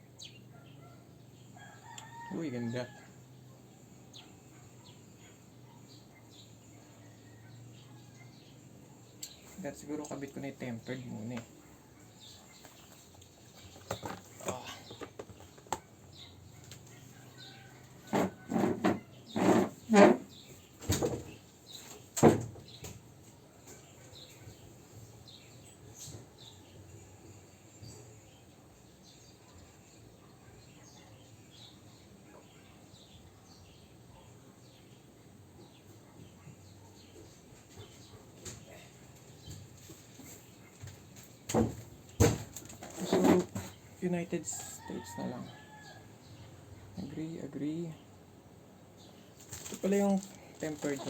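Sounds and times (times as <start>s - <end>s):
loud rustling bursts: 49.3s - 51.0s
packaging clicks and rustles: 49.4s - 51.0s.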